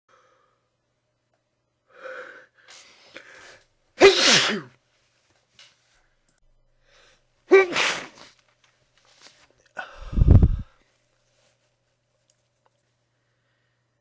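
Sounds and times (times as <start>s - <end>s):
breathy inhales: 1.9s - 3.7s, 9.8s - 10.8s
person sneezing: 4.0s - 4.8s, 7.5s - 8.4s.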